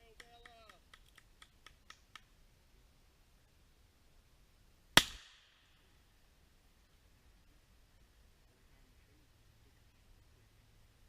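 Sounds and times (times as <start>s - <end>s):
gunshot crack with echo: 5.0s - 5.5s.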